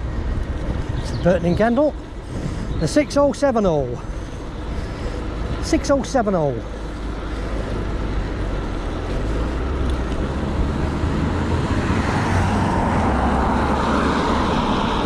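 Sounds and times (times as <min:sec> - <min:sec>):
wind rumble on microphone: 0:00.0 - 0:03.4, 0:07.8 - 0:15.0
road traffic noise: 0:00.0 - 0:15.0.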